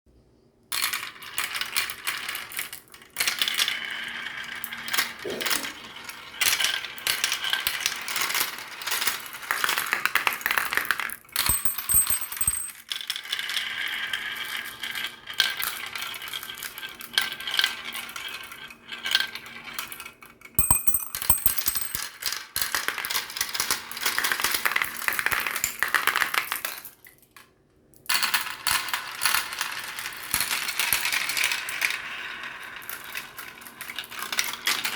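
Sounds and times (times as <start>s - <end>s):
marbles rattling down a track: 5.8s - 18.4s, 20.6s - 26.8s.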